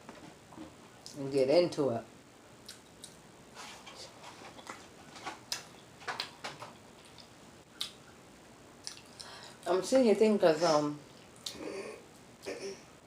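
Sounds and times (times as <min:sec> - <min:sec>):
wet chewing mouth smacks: 0:08.8 - 0:09.3.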